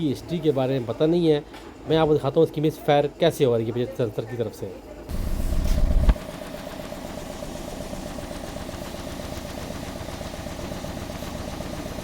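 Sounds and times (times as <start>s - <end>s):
car engine idling with misfire: 5.1s - 12.0s.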